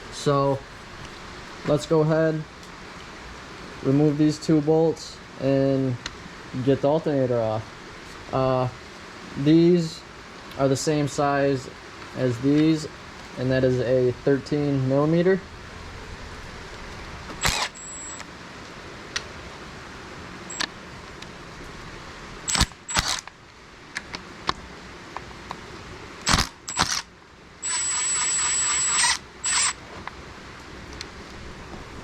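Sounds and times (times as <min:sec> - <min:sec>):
fast ratcheting with whine: 0:17.4 - 0:18.2, 0:22.5 - 0:23.3, 0:26.2 - 0:29.8.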